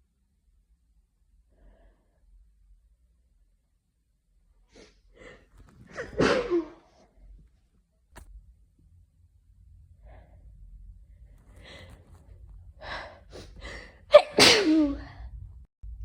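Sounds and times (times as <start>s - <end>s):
person sneezing loudly: 6.0s - 6.8s, 14.1s - 15.1s
short catching breaths: 11.3s - 14.0s.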